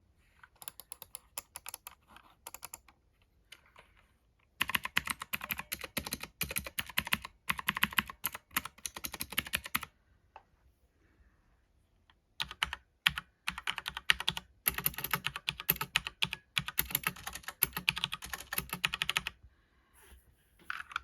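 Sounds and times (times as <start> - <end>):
mechanical keyboard typing: 0.6 - 2.9, 4.6 - 9.9, 12.4 - 19.4.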